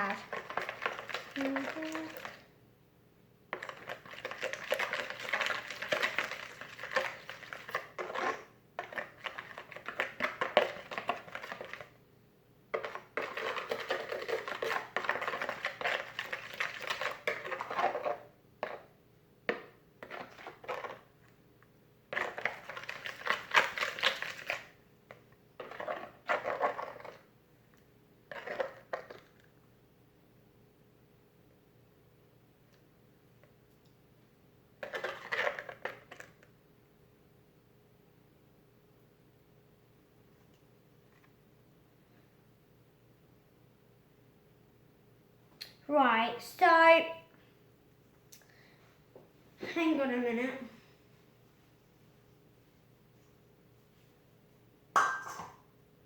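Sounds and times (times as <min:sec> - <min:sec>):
slime squelching by hand: 0:00.0 - 0:02.5, 0:03.6 - 0:11.9.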